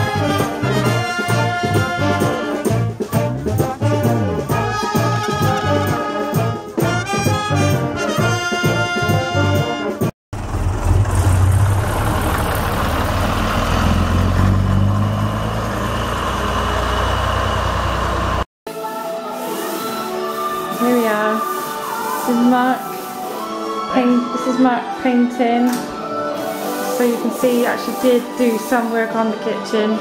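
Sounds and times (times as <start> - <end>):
brass band music: 0.0 - 10.1.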